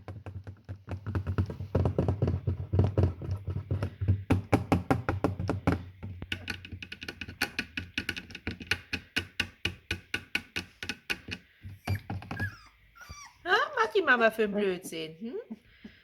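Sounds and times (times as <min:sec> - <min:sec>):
rapid knocking and rattling taps: 0:00.0 - 0:12.6.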